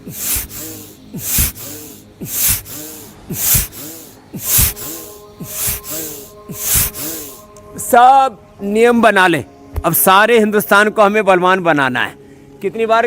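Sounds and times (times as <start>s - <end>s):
rhythmic forceful breathing: 0.0s - 7.6s.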